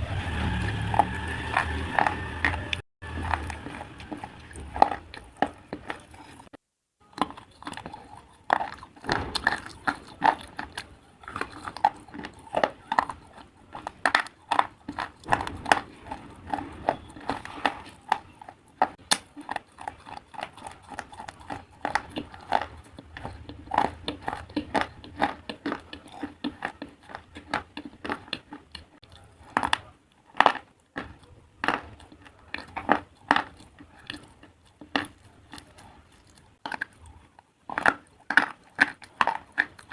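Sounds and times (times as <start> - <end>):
slate being chewed and crunched: 0.2 - 39.9.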